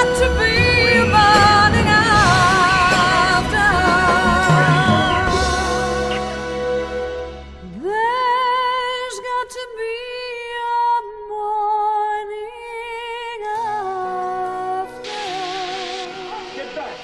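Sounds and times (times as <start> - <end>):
instrumental film music: 0.0 - 7.8.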